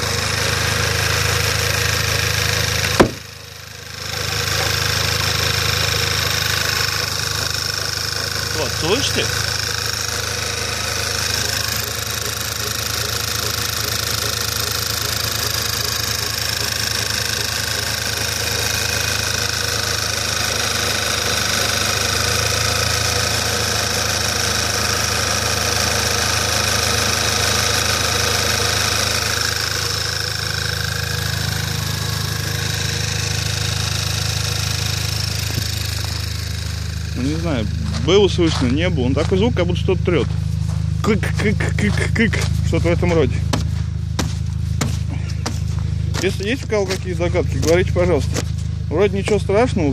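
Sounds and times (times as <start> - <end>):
car engine idling: 0.0 - 49.9
rubbing squeak from engine: 10.9 - 19.3.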